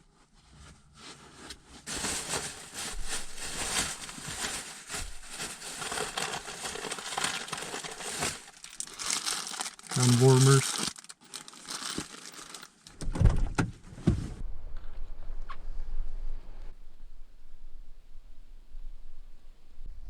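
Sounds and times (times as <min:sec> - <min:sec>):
rustling and crinkling packaging: 0:00.1 - 0:13.0.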